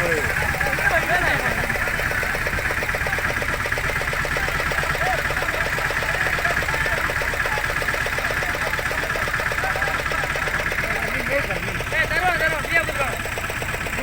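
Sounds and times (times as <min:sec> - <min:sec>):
boat engine running: 0:00.0 - 0:14.0.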